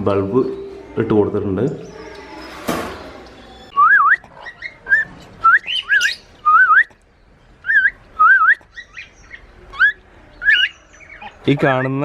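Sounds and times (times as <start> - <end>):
cockatiels whistling: 3.8 - 6.9, 7.6 - 12.0.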